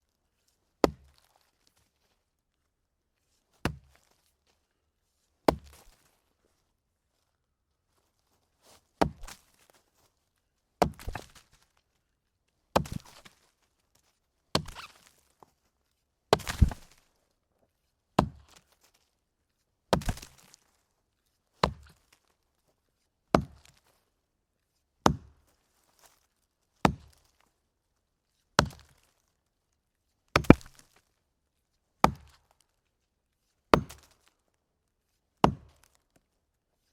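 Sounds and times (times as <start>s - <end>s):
axe chopping wood: 0.8s - 1.2s, 3.7s - 4.0s, 5.5s - 5.8s, 9.0s - 9.4s, 10.8s - 11.4s, 12.8s - 13.3s, 14.6s - 14.9s, 16.3s - 17.0s, 18.2s - 18.6s, 19.9s - 20.5s, 21.6s - 22.0s, 23.3s - 23.8s, 25.0s - 25.4s, 26.8s - 27.2s, 28.6s - 29.0s, 30.4s - 30.8s, 32.0s - 32.4s, 33.7s - 34.2s, 35.4s - 35.9s.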